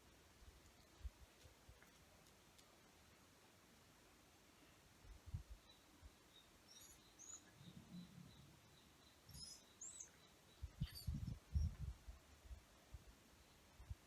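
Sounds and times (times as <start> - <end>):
bird chirps: 5.6 - 11.8.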